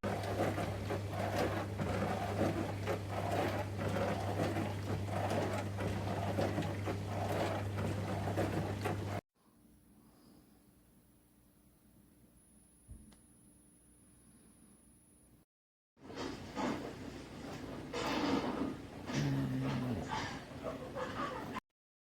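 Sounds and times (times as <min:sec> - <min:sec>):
dishwasher motor hum: 0:00.0 - 0:09.2, 0:16.0 - 0:21.6.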